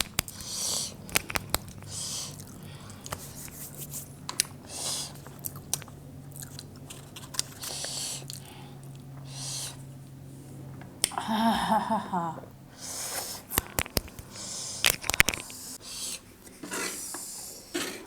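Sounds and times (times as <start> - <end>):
wet chewing and smacking: 0.0 - 9.3, 13.4 - 15.6
hissing noodle slurps: 4.6 - 5.4.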